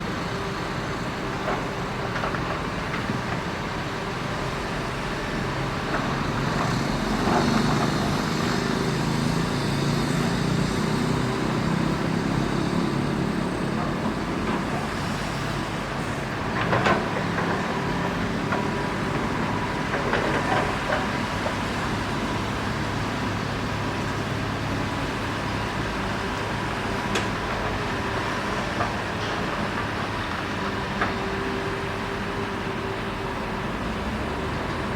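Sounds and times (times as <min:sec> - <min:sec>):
heavy diesel engines running: 0:00.0 - 0:34.9.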